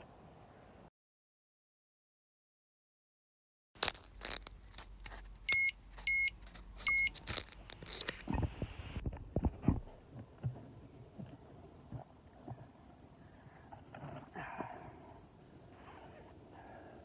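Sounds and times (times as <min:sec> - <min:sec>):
bite alarm beeps: 0:05.5 - 0:06.3, 0:06.9 - 0:07.1.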